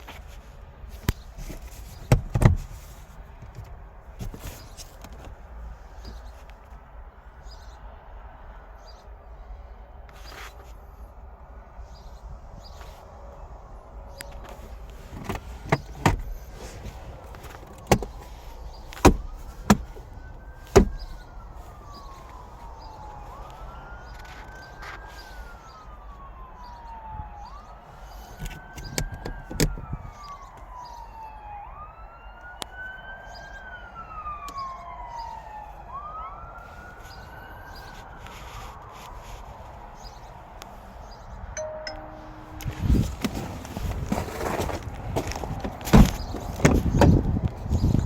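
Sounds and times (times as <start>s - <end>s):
emergency vehicle siren wailing: 7.4s - 44.2s.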